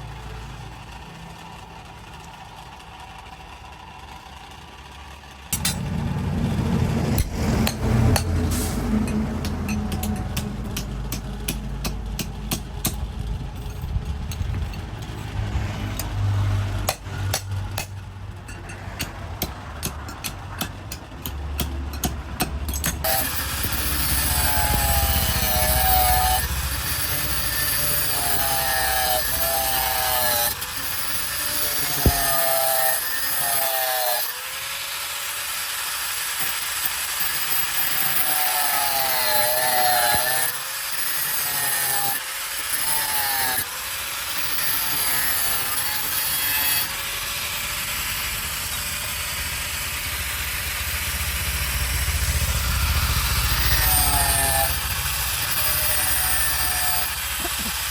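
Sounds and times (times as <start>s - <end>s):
hand tool rasping on workpiece: 7.2s - 34.4s, 36.0s - 47.8s, 53.6s - 57.9s.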